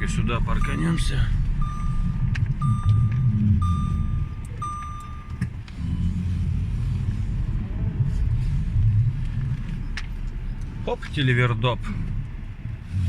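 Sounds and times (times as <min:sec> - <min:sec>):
car engine running rumble: 0:00.0 - 0:13.0
electronic warning beep: 0:00.2 - 0:06.0.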